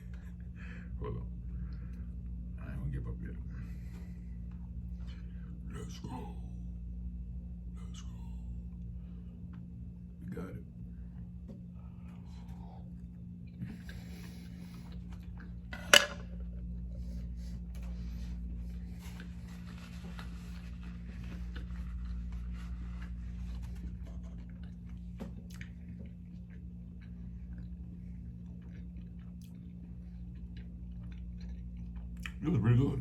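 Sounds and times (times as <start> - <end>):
steady low hum: 0.0 - 33.0
close-miked chewing and crunching: 7.0 - 15.7, 16.3 - 33.0.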